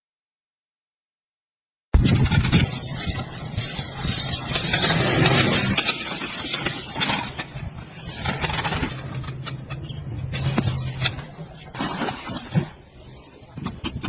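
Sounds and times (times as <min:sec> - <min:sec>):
clicks and rattles: 0:02.0 - 0:12.7.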